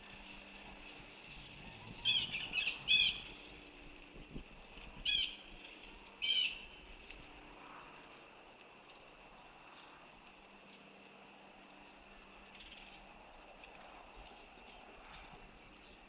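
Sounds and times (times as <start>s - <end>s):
eagle high chirping calls: 1.9s - 3.3s, 5.0s - 5.5s, 6.2s - 6.6s.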